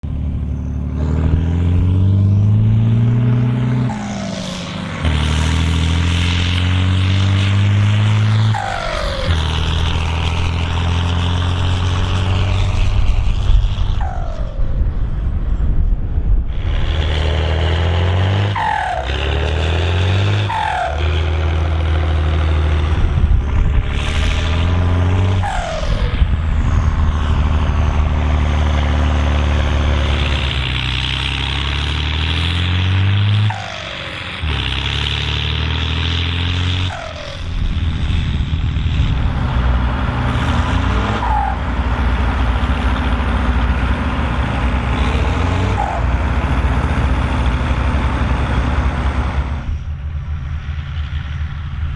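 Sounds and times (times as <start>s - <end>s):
tractor diesel engine revving: 0.0s - 51.9s
falling turbo whistle: 20.4s - 21.1s.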